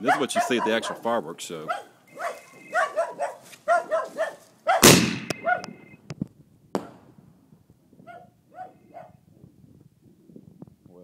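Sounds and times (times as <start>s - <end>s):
dog barking: 0.0s - 5.8s, 8.0s - 9.2s
firework launching with a bang: 4.8s - 5.4s, 6.7s - 7.1s.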